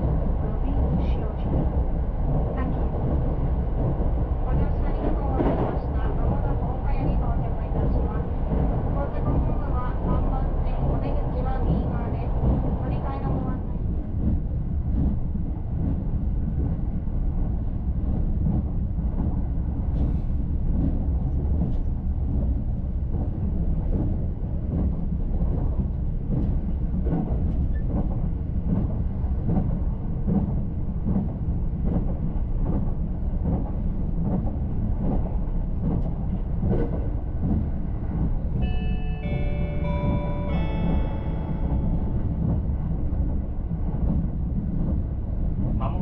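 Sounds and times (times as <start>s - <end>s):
train rumble inside passenger car: 0.0s - 46.0s
stepped tones: 38.6s - 42.8s.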